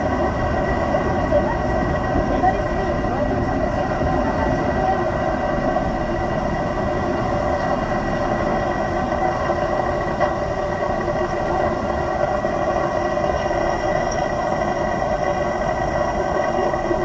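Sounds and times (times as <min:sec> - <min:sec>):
subway train hum: 0:00.0 - 0:17.0
thin steady whine: 0:00.0 - 0:17.0.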